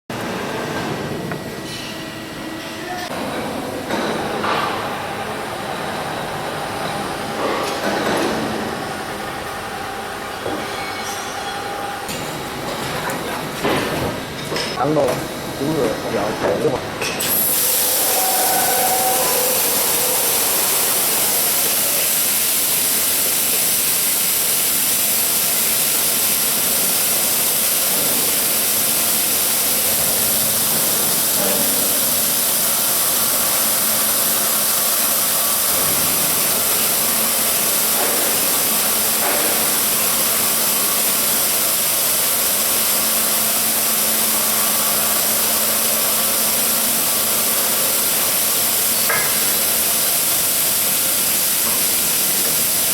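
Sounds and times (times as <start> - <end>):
faint machine hum: 0.1 - 51.6
drilling machine hissing: 17.2 - 52.9.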